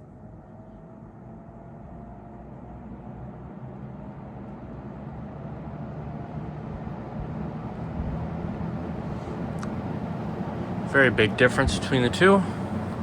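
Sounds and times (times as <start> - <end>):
box fan running: 2.9 - 13.0.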